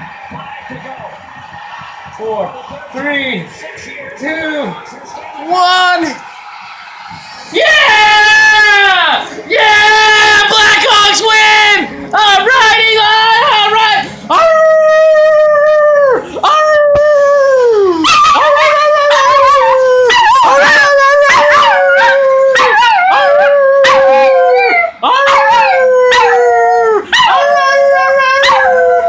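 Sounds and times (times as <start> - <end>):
dog howling: 14.3 - 29.0
dog yipping: 21.3 - 26.4.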